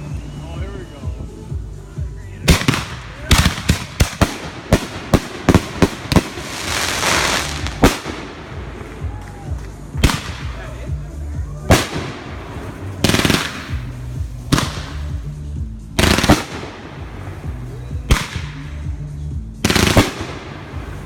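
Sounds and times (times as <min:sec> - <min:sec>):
music with bass line: 0:00.0 - 0:21.0
fireworks bangs with crackle: 0:02.5 - 0:10.7, 0:11.7 - 0:15.3, 0:16.0 - 0:17.3, 0:19.6 - 0:21.0.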